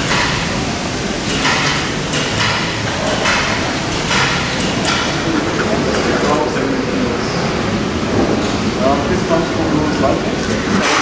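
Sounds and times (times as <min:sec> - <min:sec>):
steady mechanical din: 0:00.0 - 0:06.9.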